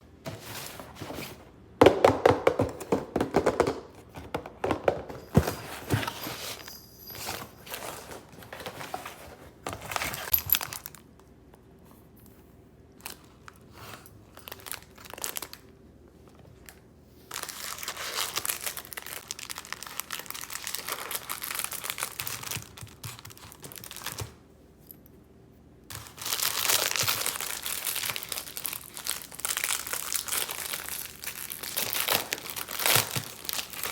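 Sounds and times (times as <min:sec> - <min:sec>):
crinkling and rustling: 0:00.1 - 0:01.6, 0:02.5 - 0:11.3, 0:25.9 - 0:33.9.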